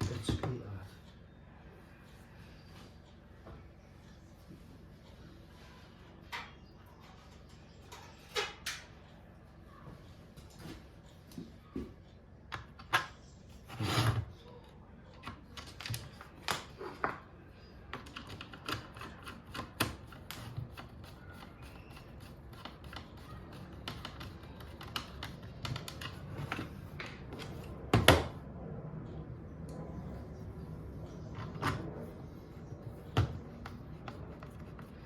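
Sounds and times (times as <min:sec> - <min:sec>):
small tools clicking and tapping: 0:17.9 - 0:27.5.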